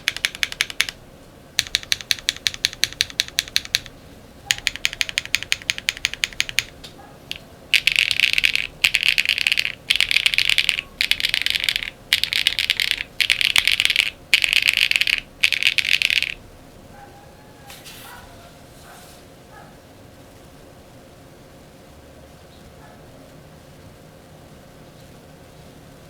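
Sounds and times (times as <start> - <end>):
mechanical keyboard typing: 0.0 - 1.0, 1.6 - 16.4.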